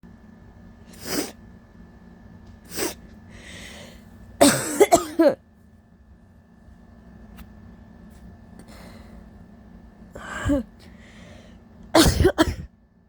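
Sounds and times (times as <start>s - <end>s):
breathy sounds: 2.7s - 4.1s
woman coughing: 4.4s - 5.4s, 12.0s - 12.7s.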